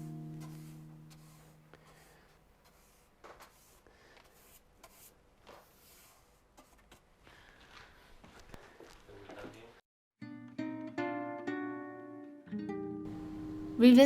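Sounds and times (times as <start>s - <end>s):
plucked-string music: 0.0s - 1.1s, 10.2s - 14.0s.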